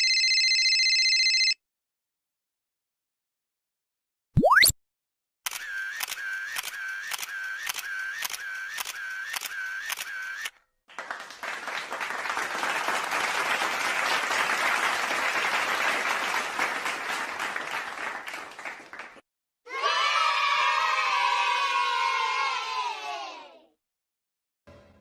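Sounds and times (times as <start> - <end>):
crowd applause: 10.9 - 19.2.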